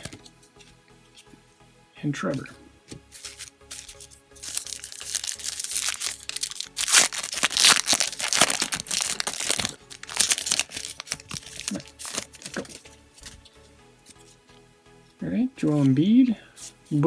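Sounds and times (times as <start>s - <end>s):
wrapper crinkling and tearing: 3.2s - 13.4s.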